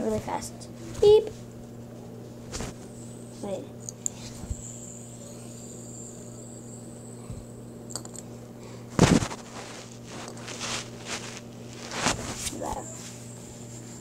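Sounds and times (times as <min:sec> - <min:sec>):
steady low hum: 0:00.0 - 0:14.0
soft rustling swishes: 0:00.2 - 0:03.6, 0:09.0 - 0:14.0.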